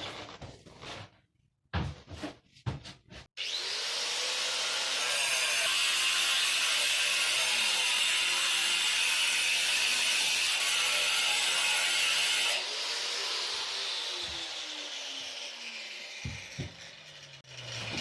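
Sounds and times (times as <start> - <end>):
angle grinder cutting concrete: 3.4 - 18.0.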